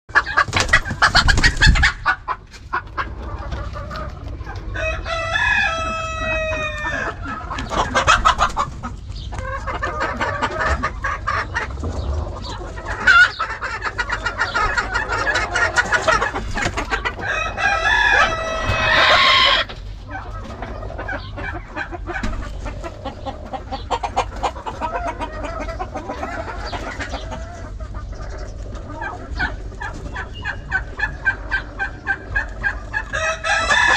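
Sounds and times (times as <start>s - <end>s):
chickens clucking: 0.1s - 33.9s
rooster crowing: 4.8s - 7.2s, 17.2s - 19.7s, 33.1s - 33.9s.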